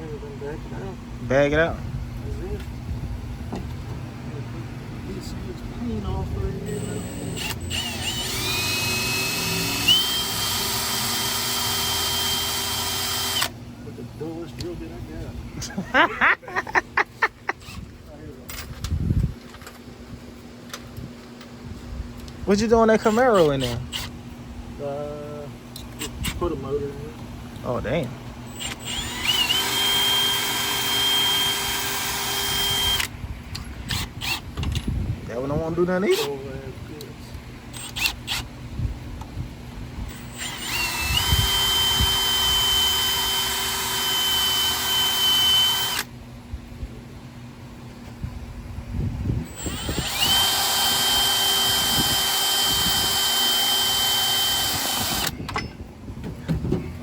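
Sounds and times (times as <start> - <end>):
shop tool hissing and whining: 6.7 - 13.6, 28.5 - 33.1, 40.1 - 46.1, 49.5 - 55.3.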